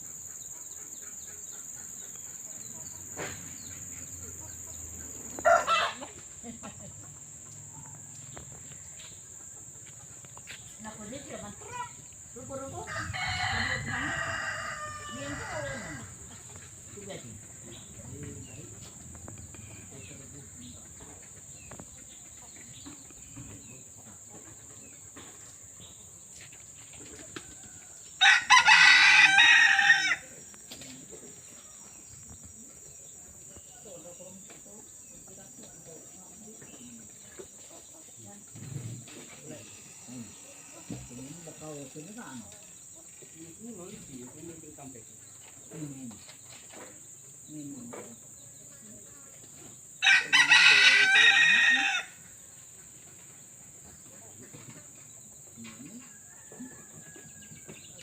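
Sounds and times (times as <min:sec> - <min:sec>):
insects droning: 0:00.0 - 0:58.0
rooster crowing: 0:05.3 - 0:06.2, 0:12.4 - 0:16.6, 0:27.4 - 0:30.4, 0:50.0 - 0:52.4, 0:56.0 - 0:58.0.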